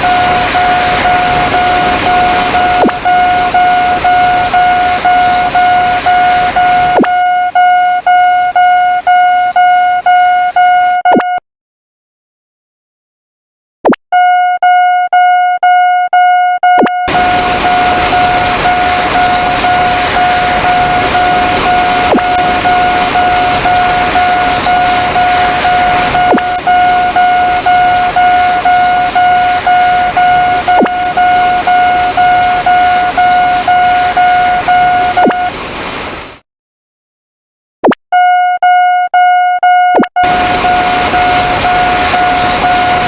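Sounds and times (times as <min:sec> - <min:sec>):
train passing with rushing noise: 0:17.1 - 0:26.3.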